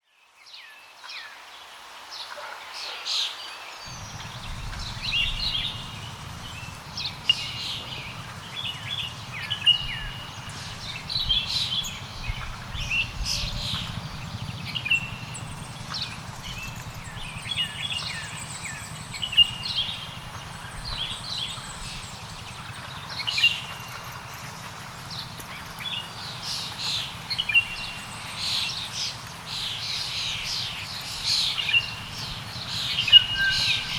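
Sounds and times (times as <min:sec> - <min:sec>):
forest birds chirping: 0:00.0 - 0:33.9
low rumble: 0:03.9 - 0:19.0.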